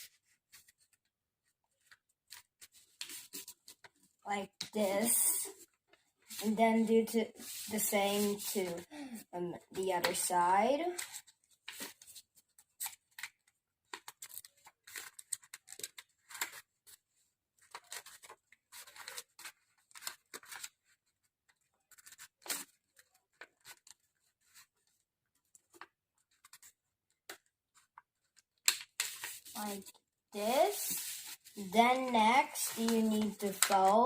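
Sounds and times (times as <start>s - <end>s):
paper rustling as folded: 0.0s - 4.1s, 10.9s - 34.0s.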